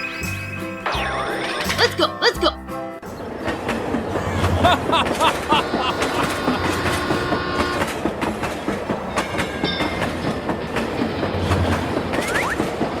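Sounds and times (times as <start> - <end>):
train wheels clattering on rails: 3.1 - 13.0.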